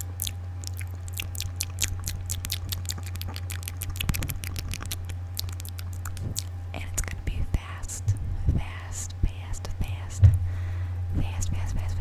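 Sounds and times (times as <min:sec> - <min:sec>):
tongue clicks and lip smacks: 0:00.0 - 0:07.2
low electrical hum: 0:00.0 - 0:12.0.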